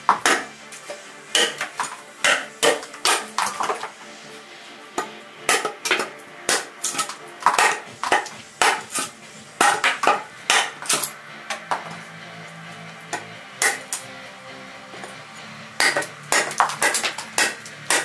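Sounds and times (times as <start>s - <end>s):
background music: 0.0s - 18.0s
knife chopping with ringing knocks: 0.1s - 0.5s, 1.3s - 3.4s, 5.0s - 11.1s, 13.1s - 14.0s, 15.8s - 18.0s.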